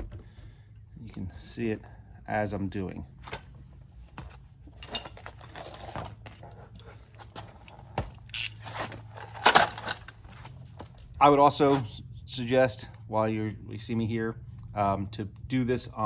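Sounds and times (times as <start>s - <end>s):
metal hand tools clinking: 4.2s - 11.0s.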